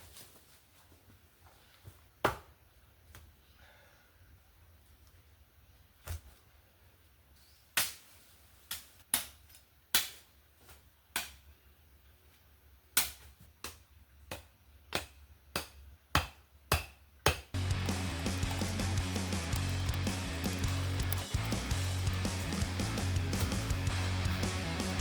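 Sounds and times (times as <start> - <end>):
cutting tool chopping wood: 13.0 - 24.2.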